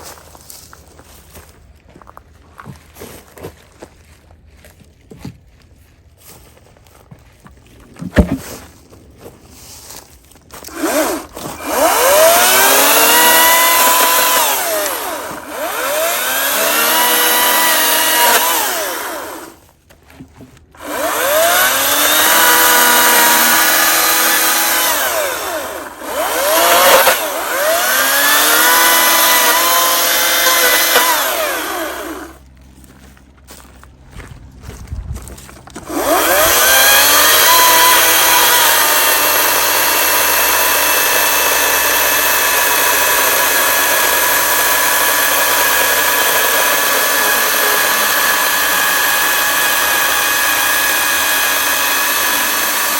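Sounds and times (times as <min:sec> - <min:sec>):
battery chainsaw cutting log: 0:08.0 - 0:08.6, 0:10.6 - 0:32.5, 0:35.8 - 0:52.9.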